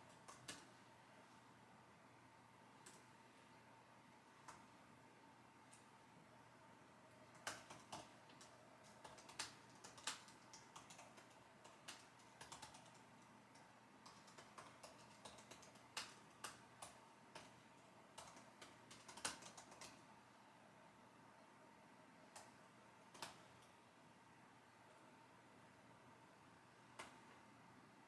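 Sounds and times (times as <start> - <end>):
keyboard typing: 0.1 - 0.8, 7.3 - 20.1, 23.1 - 23.4.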